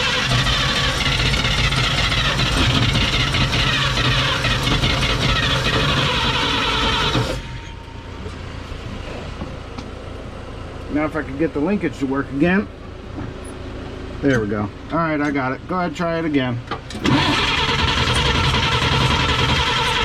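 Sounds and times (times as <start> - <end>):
engine cranking by starter: 0.0 - 7.8, 16.8 - 20.0.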